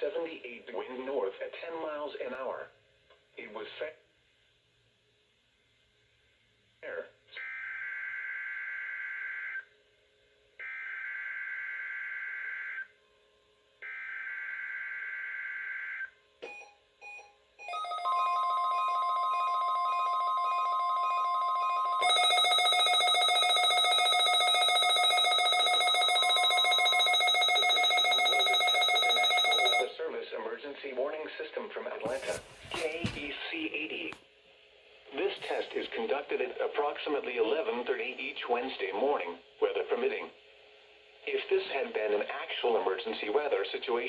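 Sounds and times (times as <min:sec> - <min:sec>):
steady warning alarm tone: 0:07.4 - 0:09.7, 0:10.6 - 0:13.0, 0:13.8 - 0:29.9
buzzy alarm tone: 0:17.7 - 0:29.9.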